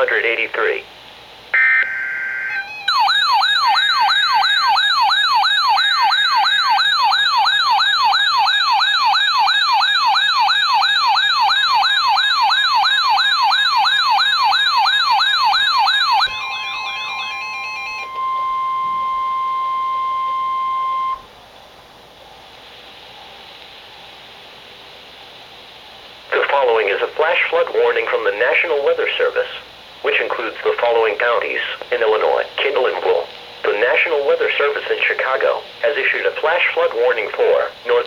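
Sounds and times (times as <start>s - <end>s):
data tone burst: 1.6s - 3.3s, 16.3s - 21.3s
warbling electronic siren: 1.6s - 21.3s.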